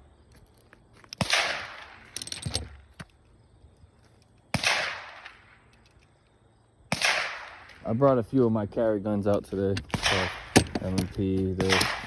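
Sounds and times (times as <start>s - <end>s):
handgun shots with echo: 6.9s - 7.7s, 9.9s - 12.0s.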